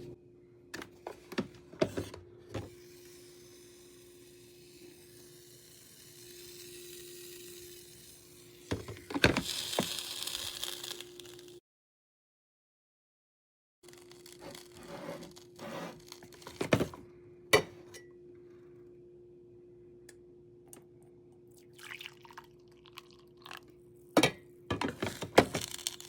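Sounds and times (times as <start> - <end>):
coffee maker humming: 0.8 - 11.6, 20.0 - 26.0
coffee maker hissing and sizzling: 2.6 - 11.6, 13.9 - 16.9, 24.8 - 26.0.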